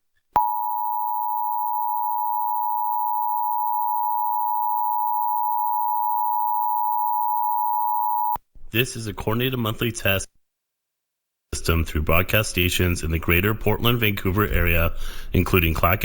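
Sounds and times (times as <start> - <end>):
two-tone alert signal: 0.4 - 8.4.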